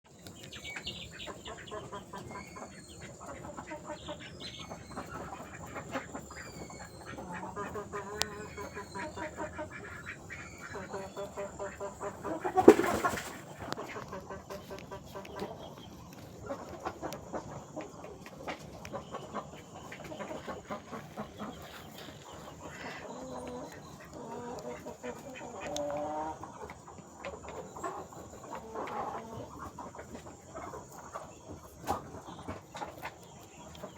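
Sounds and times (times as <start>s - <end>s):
chickens clucking: 0.1s - 33.9s.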